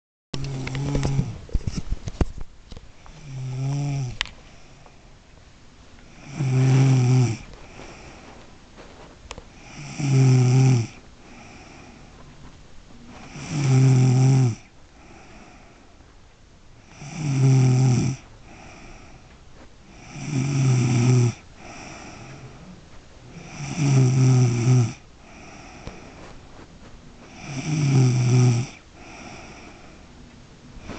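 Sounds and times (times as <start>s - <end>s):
person snoring: 0.4s - 1.4s, 3.1s - 4.7s, 6.1s - 8.2s, 9.5s - 12.0s, 13.2s - 15.8s, 16.8s - 19.2s, 19.9s - 22.6s, 23.3s - 26.2s, 27.3s - 30.0s
soft breathing: 2.8s - 5.3s, 5.9s - 10.1s, 10.9s - 13.8s, 14.6s - 17.2s, 18.1s - 30.9s.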